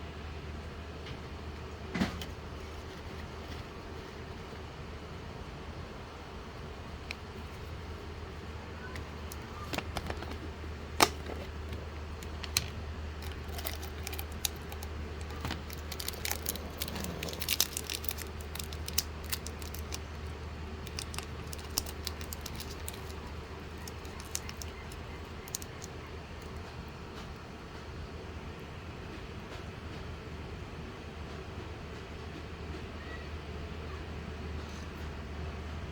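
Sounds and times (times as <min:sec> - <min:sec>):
steady low hum: 0:00.0 - 0:35.9
packaging clicks rattles and crinkles: 0:08.8 - 0:27.4.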